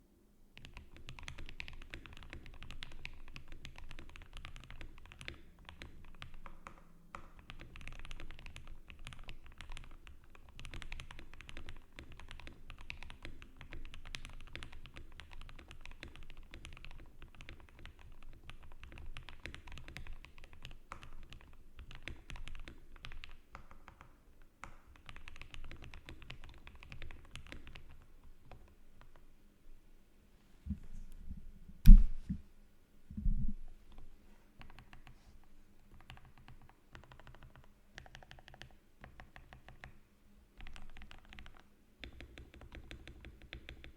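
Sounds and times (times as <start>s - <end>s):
fast mechanical keyboard typing: 0.6s - 6.4s, 7.4s - 24.1s, 25.0s - 28.6s, 36.0s - 39.9s, 40.6s - 43.9s.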